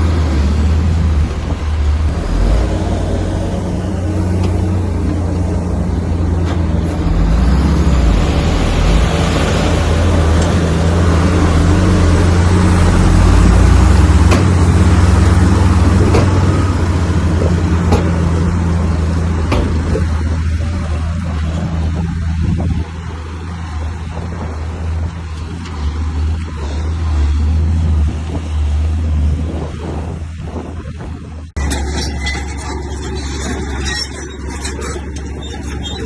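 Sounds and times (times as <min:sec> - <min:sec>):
bulldozer diesel engine running: 0:00.0 - 0:36.0
sharp metallic clanks: 0:31.6 - 0:36.0.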